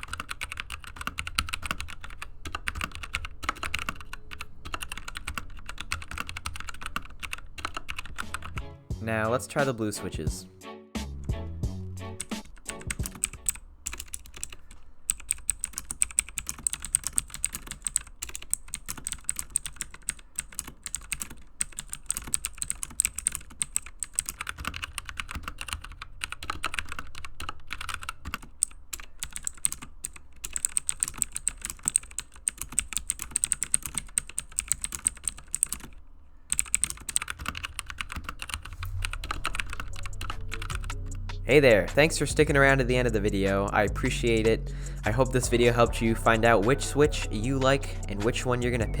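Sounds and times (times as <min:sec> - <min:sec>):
fast typing on mechanical keyboard: 0:00.0 - 0:08.6, 0:12.2 - 0:41.1.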